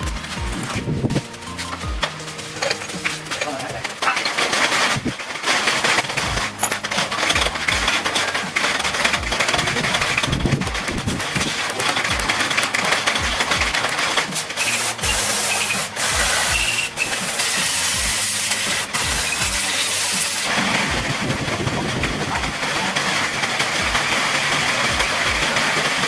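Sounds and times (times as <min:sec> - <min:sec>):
background music with steady beat: 0:00.0 - 0:26.0
dense hissing noise: 0:14.0 - 0:26.0.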